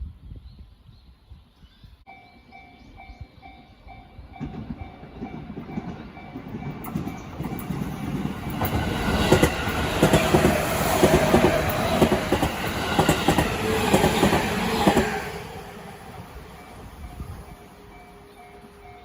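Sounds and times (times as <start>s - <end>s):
train wheels clacking over rail joints: 4.4s - 15.2s.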